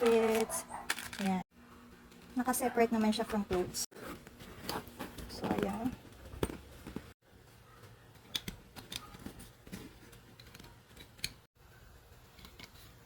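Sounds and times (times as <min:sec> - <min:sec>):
backpack items clicking and knocking: 0:04.6 - 0:07.1.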